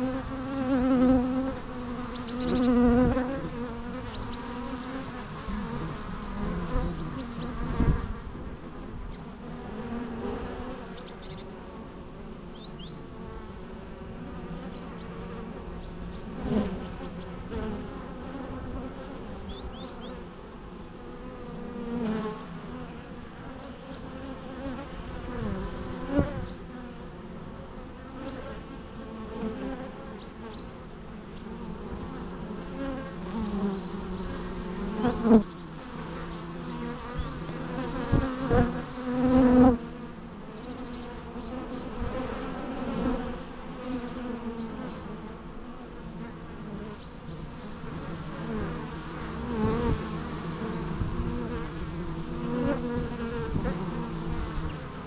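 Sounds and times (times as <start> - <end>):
bees buzzing: 0.0 - 55.0
single bee buzz: 0.0 - 55.0.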